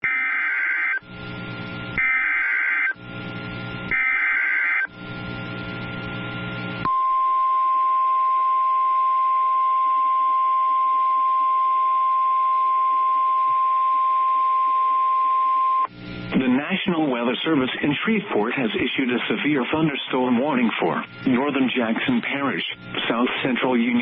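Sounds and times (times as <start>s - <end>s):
low buzz: 3.0s - 3.9s, 4.9s - 7.6s
steady loud warning tone: 19.2s - 23.6s.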